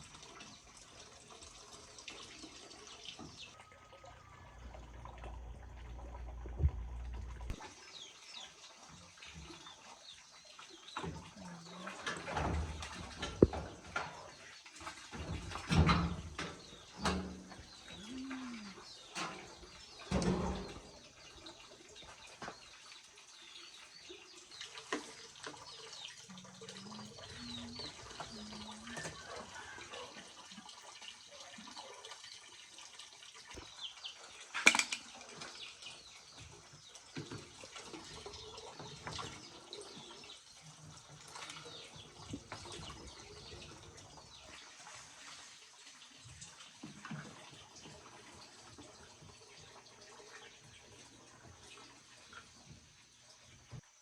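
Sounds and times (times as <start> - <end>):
small birds chirping: 7.4 - 29.8
dove cooing: 17.9 - 18.8
knocks and clattering: 34.6 - 35.0.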